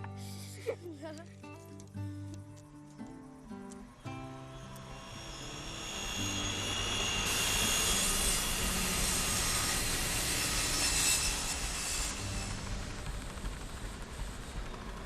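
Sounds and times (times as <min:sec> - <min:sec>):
music: 0:00.0 - 0:10.4, 0:12.2 - 0:14.2
circular saw whining: 0:03.9 - 0:15.0.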